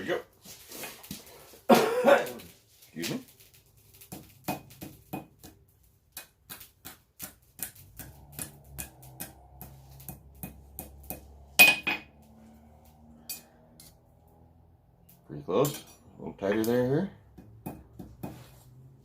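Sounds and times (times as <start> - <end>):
hammer striking steel on anvil: 8.0 - 12.2.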